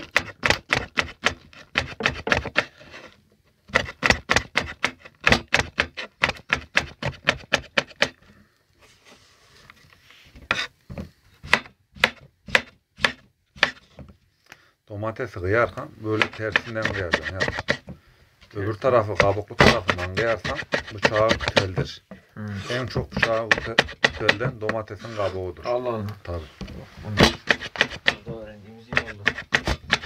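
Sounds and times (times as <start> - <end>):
knife chopping on cutting board: 0.0 - 2.7, 11.4 - 13.8, 16.1 - 17.8, 19.1 - 21.8, 22.7 - 24.9, 27.1 - 30.0.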